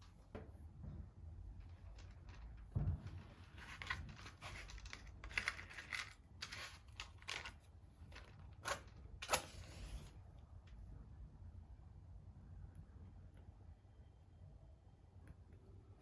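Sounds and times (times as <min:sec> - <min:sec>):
packaging rustling and crinkling: 0:01.6 - 0:10.1.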